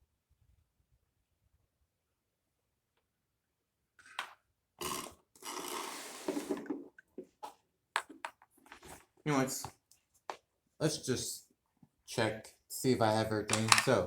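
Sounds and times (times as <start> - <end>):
plastic pieces rustling and clacking: 13.5 - 14.0.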